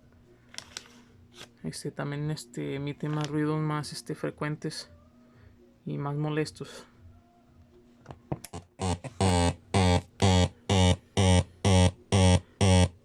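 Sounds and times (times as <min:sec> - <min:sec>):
pulsing buzzy tone: 0:08.7 - 0:13.0.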